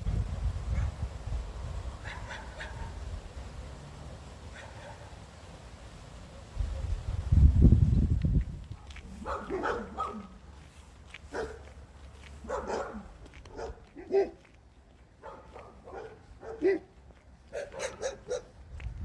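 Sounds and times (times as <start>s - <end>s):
dog barking: 0.7s - 1.0s, 2.0s - 3.0s, 4.5s - 5.1s, 8.8s - 10.4s, 11.3s - 11.7s, 12.4s - 14.5s, 15.2s - 16.9s, 17.5s - 18.6s.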